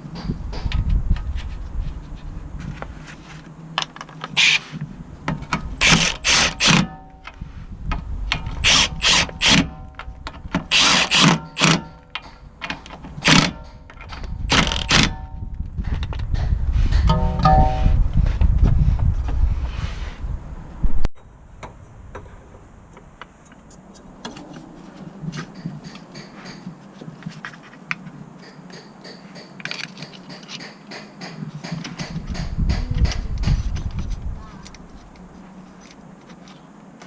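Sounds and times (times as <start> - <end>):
low rumble: 15.2 - 23.0.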